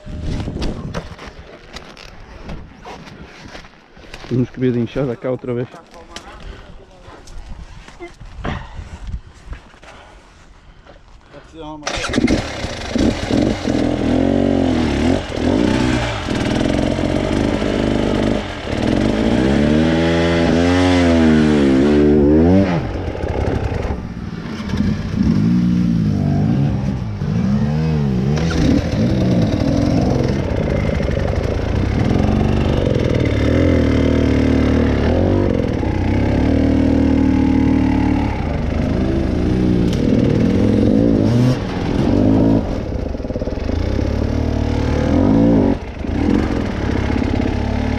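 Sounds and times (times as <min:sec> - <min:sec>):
motorcycle engine revving: 0:11.9 - 0:47.9.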